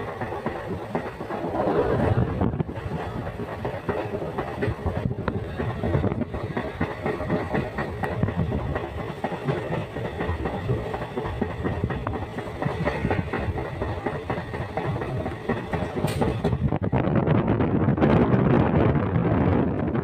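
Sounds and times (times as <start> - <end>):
moving vehicle rumbling and rattling: 0.6 - 20.0.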